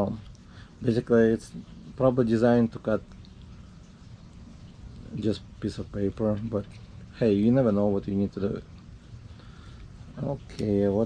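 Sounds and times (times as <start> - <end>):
low steady hum: 0.0 - 11.0
faint small ticks: 3.0 - 5.2.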